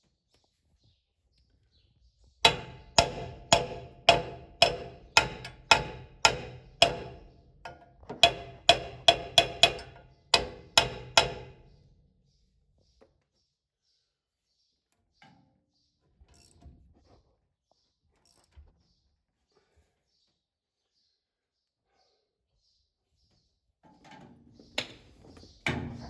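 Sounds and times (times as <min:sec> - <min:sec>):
hammer striking steel: 0:02.4 - 0:11.6.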